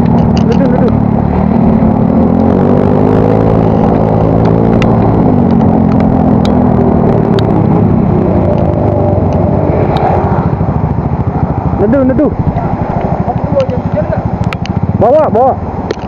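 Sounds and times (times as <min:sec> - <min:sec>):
scooter engine running: 0:00.0 - 0:16.0.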